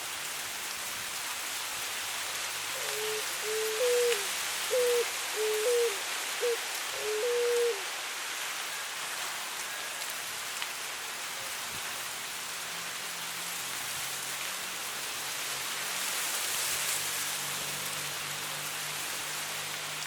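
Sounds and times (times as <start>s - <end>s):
wind through dry grass: 0.0s - 20.0s
dove cooing: 2.8s - 7.9s.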